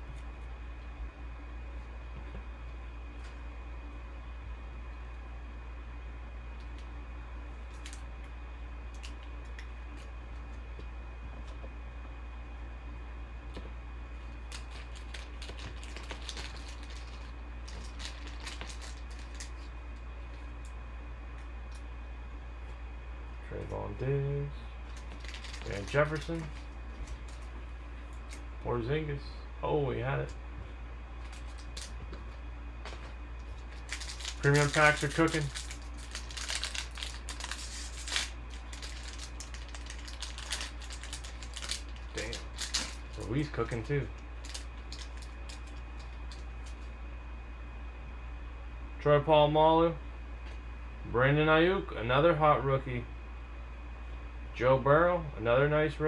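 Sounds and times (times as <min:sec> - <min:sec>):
steady low hum: 0:00.0 - 0:56.0
cards and wrappers clicking and rustling: 0:14.2 - 0:19.7, 0:24.8 - 0:27.6, 0:31.2 - 0:32.3, 0:32.9 - 0:46.9.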